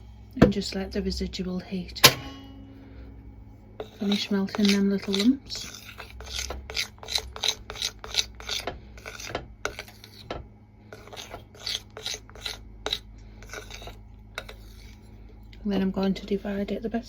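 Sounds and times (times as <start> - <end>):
utensil scraping a glass bowl: 3.8 - 15.1.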